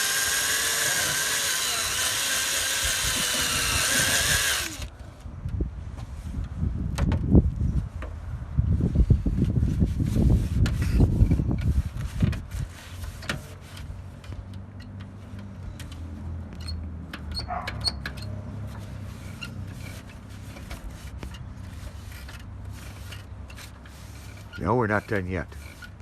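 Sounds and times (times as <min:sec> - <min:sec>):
sandpaper scratching plastic: 0:09.5 - 0:14.0, 0:18.7 - 0:26.0.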